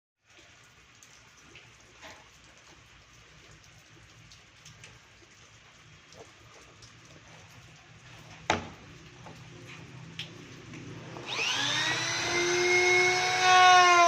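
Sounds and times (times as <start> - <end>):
light clicks and knocks: 6.2 - 10.9.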